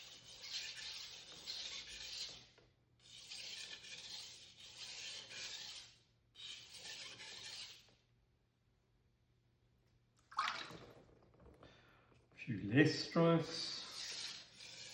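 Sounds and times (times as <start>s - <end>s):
knife scraping on a whetstone: 0.0s - 2.4s, 3.1s - 7.9s, 13.8s - 14.9s.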